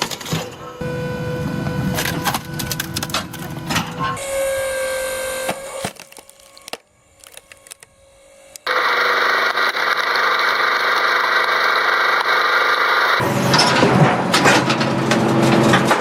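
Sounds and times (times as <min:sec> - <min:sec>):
steady machine whine: 0:00.6 - 0:13.6
wood crackling and splintering: 0:01.9 - 0:04.1, 0:05.5 - 0:07.9.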